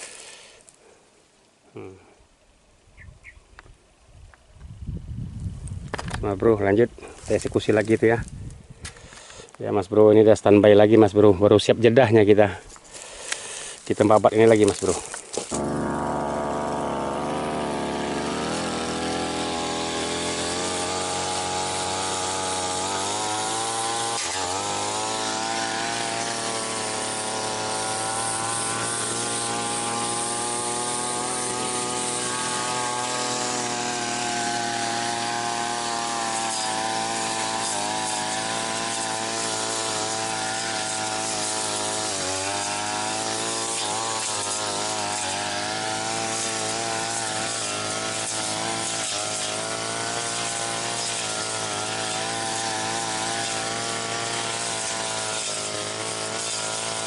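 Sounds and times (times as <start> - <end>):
blade cutting weeds: 0.0 - 0.8, 12.7 - 57.0
brush cutter engine running: 13.0 - 57.0.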